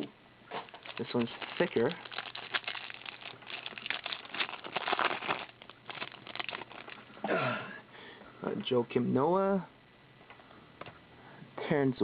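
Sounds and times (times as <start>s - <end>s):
wrapper crinkling and tearing: 0.5s - 7.1s.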